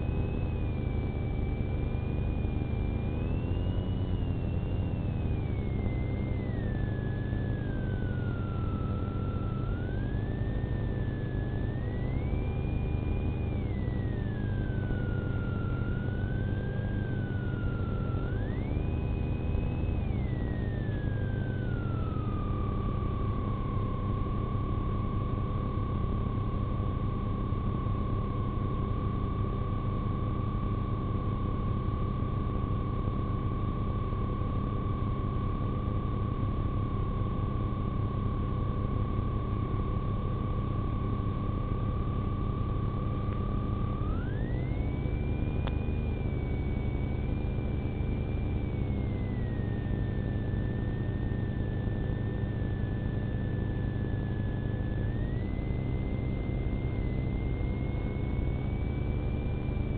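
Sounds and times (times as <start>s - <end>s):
police siren gliding: 0.0s - 24.5s, 43.0s - 59.9s.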